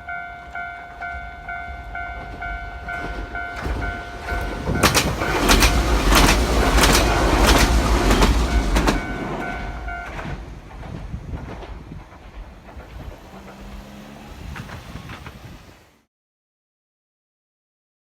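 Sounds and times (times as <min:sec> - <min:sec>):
level crossing bell ringing: 0:00.0 - 0:05.9, 0:08.2 - 0:10.2
train rumbling past: 0:00.0 - 0:16.1
wheels clacking over rail joints: 0:00.1 - 0:16.0.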